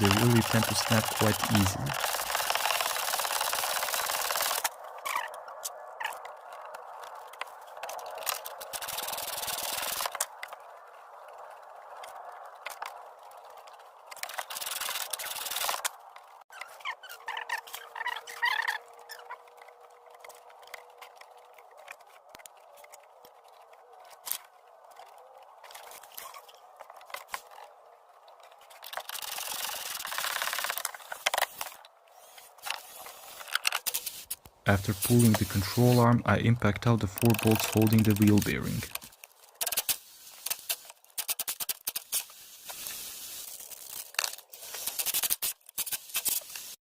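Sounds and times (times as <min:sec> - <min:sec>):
metal scraping and rubbing: 0:30.8 - 0:36.2.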